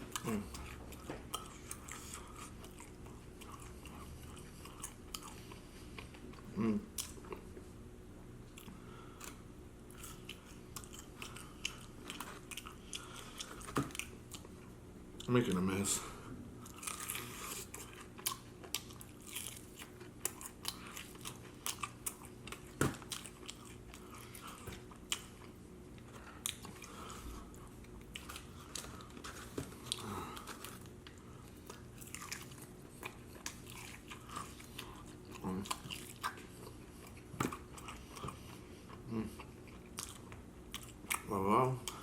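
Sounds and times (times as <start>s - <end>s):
wet chewing and smacking: 0.0s - 7.6s, 16.6s - 42.0s
steady low hum: 0.0s - 42.0s.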